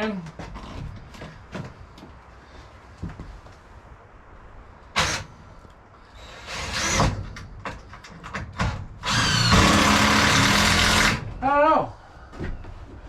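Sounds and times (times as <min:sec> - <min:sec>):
cordless drill driving a screw: 0:09.0 - 0:11.2.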